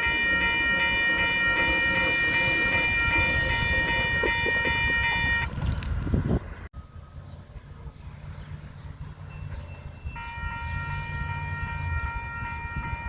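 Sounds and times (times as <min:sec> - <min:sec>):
pulsing high warning tone: 0:00.0 - 0:05.7
train rumble and clanks: 0:00.0 - 0:13.0.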